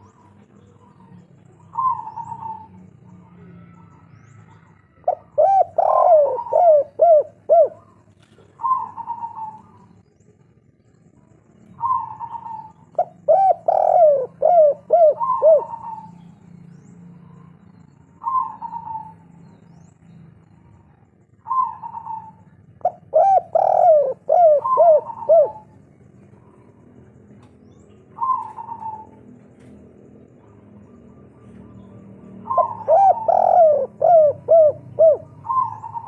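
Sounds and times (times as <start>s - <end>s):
dove cooing: 0.0s - 10.0s, 11.7s - 16.4s, 18.2s - 19.2s, 21.2s - 36.0s.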